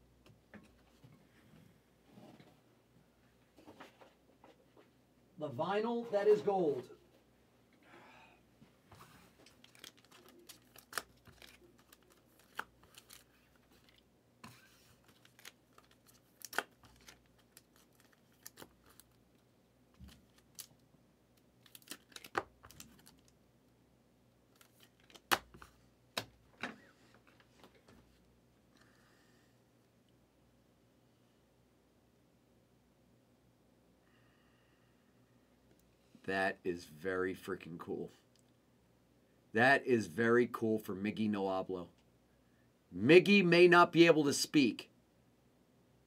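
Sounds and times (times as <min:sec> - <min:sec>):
cards clicking and rustling: 0:09.4 - 0:19.2, 0:21.6 - 0:23.4, 0:24.6 - 0:27.9.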